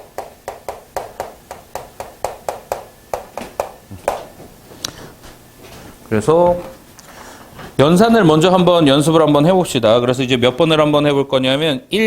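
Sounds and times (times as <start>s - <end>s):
sharp taps: 0.0s - 4.4s.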